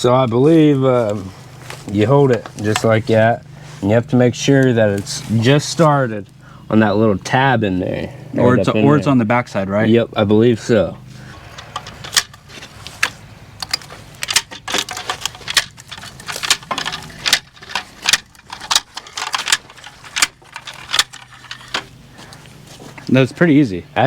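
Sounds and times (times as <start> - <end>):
marker wheel clicking and rattling: 11.5 - 21.9.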